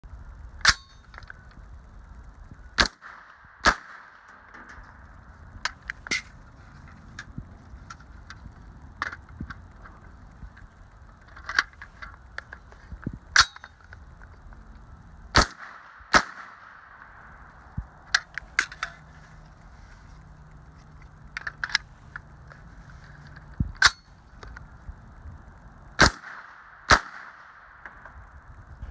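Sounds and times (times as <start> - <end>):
single gunshots: 2.8 - 4.2, 15.4 - 16.8, 26.0 - 27.6.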